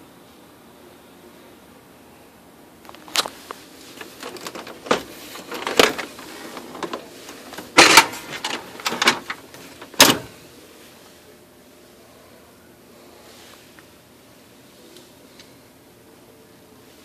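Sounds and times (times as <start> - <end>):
printer clacking and grinding: 3.9 - 10.4.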